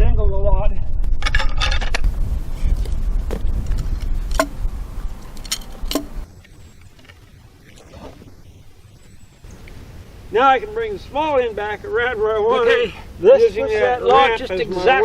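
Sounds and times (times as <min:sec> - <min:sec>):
low rumble: 0:00.0 - 0:06.3
log knocking and clinking: 0:04.3 - 0:04.6, 0:05.4 - 0:06.2.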